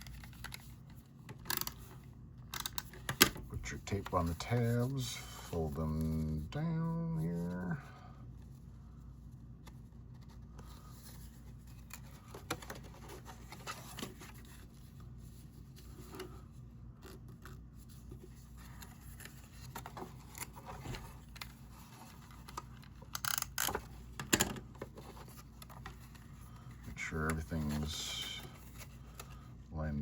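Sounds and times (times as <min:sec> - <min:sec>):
paper and tape rustling: 0:09.4 - 0:29.5.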